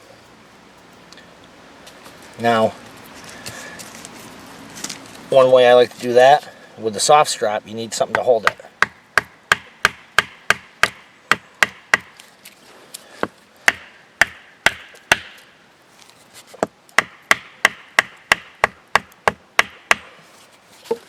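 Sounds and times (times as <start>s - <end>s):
wooden stake being pounded: 8.1s - 12.2s, 13.2s - 15.5s, 16.5s - 20.2s.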